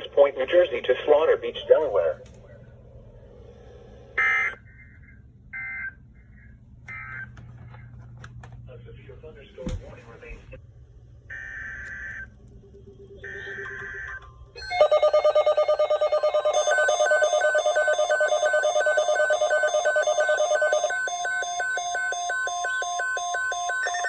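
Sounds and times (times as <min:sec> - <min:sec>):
pulsing electronic alarm beeping: 0:04.2 - 0:07.3, 0:11.3 - 0:24.0.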